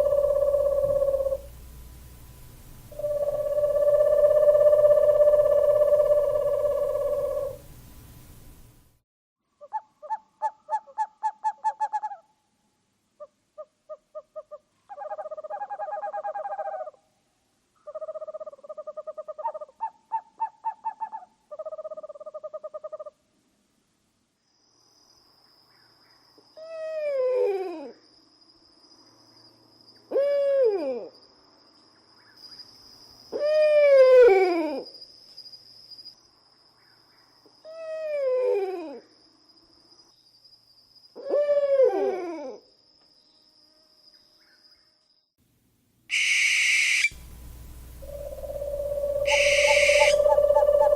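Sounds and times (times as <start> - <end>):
owl falling calls: 0.0 - 1.6, 2.9 - 7.7, 46.1 - 50.9
owl trills: 0.0 - 1.6, 2.9 - 7.7, 9.6 - 12.3, 13.2 - 17.0, 17.8 - 23.2, 46.1 - 50.9
faint high whine: 0.0 - 9.0, 46.1 - 50.9.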